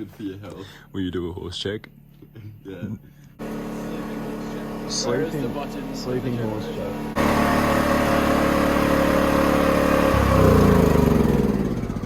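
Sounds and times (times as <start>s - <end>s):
engine running: 3.4s - 12.0s.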